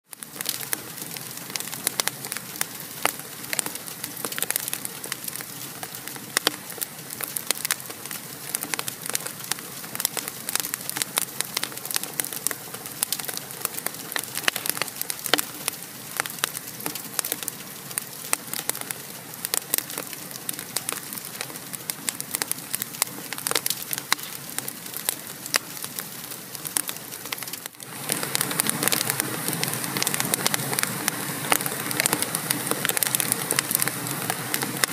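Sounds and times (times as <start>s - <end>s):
wood fire crackling: 0.1s - 34.9s.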